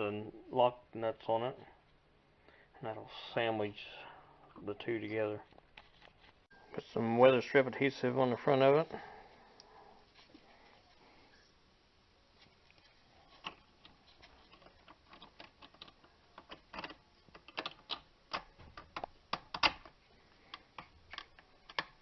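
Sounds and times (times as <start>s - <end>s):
small parts clicking and tapping: 12.7s - 22.0s.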